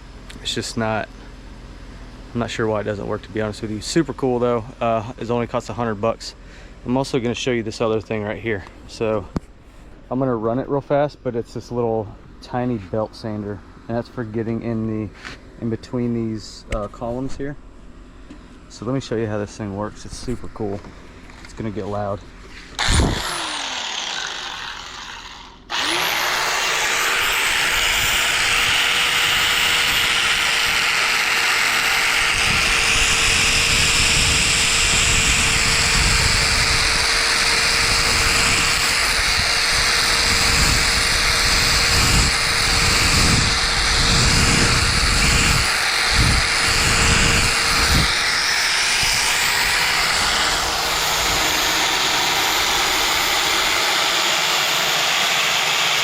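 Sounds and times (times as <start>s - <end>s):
belt sander whining: 20.2s - 56.0s
sander grinding on wood: 20.2s - 56.0s.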